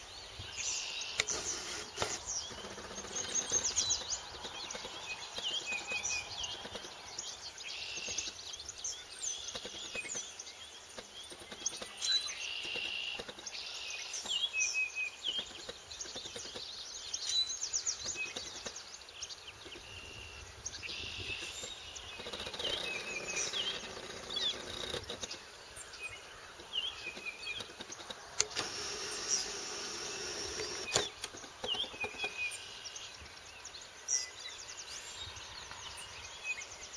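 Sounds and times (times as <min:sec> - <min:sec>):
birds chirping and trilling: 0:00.2 - 0:10.4, 0:15.4 - 0:33.2.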